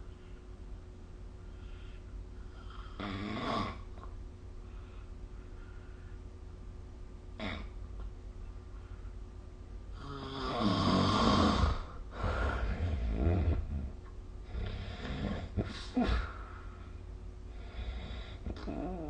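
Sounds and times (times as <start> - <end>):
person snoring: 2.5 - 3.9, 10.0 - 16.5, 17.6 - 19.0.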